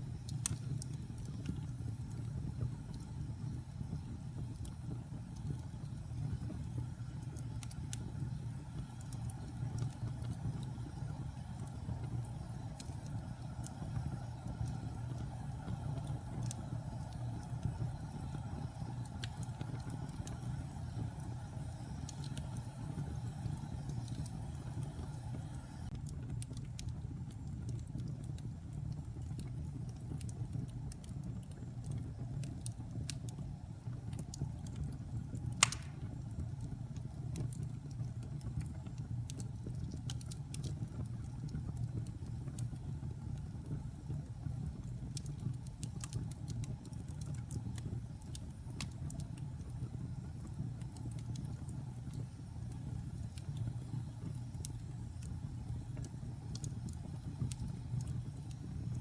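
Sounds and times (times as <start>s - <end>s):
fire crackling: 0.0s - 59.0s
fire low rumble: 0.0s - 59.0s
loud wood fire pop: 35.5s - 36.5s.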